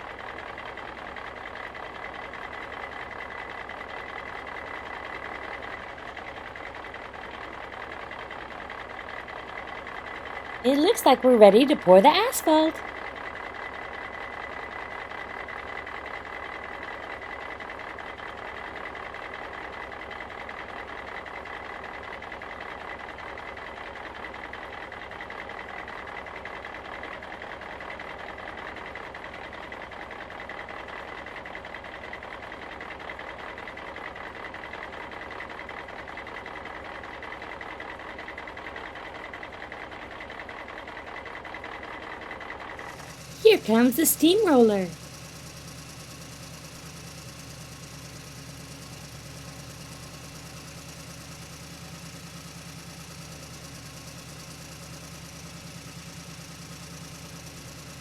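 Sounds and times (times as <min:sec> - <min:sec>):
small motor running with rattle: 0:00.0 - 0:10.6, 0:12.9 - 0:43.4, 0:45.0 - 0:58.0.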